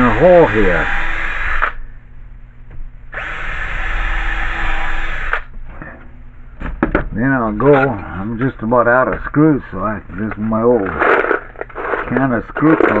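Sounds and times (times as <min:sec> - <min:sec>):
power drill drilling wood: 0:00.0 - 0:01.8, 0:03.2 - 0:05.5.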